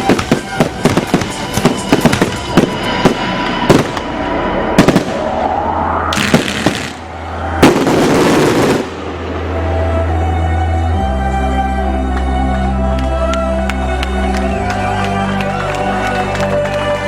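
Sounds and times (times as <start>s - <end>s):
loud firework bursts: 0.0s - 4.2s, 4.8s - 5.4s, 6.1s - 9.8s
fireworks bangs and crackles: 0.0s - 5.3s, 6.1s - 9.7s
music: 0.0s - 5.8s, 7.2s - 17.0s
firework whistle rising: 0.0s - 10.8s.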